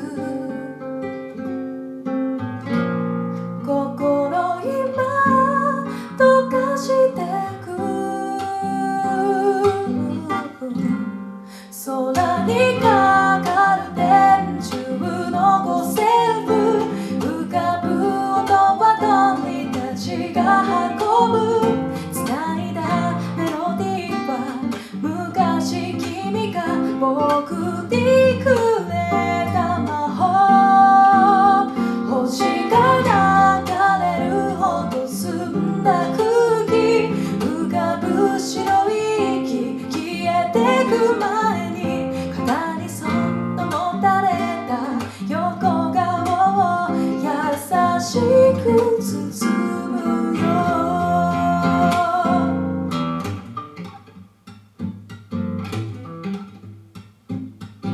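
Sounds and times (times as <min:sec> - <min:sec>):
person singing: 0:00.0 - 0:01.0, 0:03.6 - 0:52.9
strummed acoustic guitar: 0:00.0 - 0:57.9.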